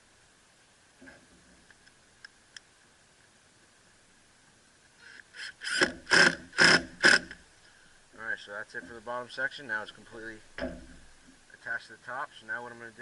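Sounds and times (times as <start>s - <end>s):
faint clicks: 1.6s - 2.7s
power drill driving screw: 5.0s - 7.4s.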